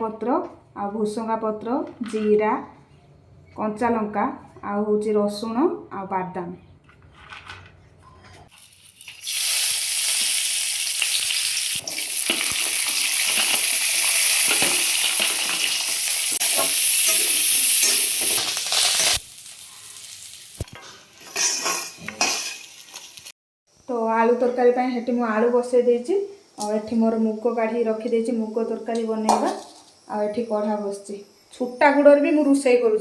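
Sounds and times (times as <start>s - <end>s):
food sizzling in hot oil: 8.5s - 23.4s, 25.0s - 32.5s.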